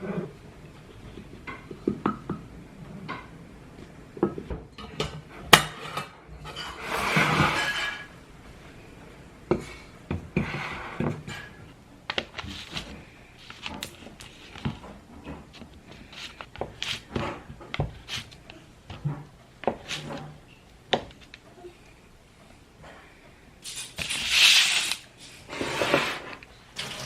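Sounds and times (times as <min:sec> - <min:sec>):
household objects clattering: 0:09.5 - 0:21.4, 0:25.5 - 0:27.0.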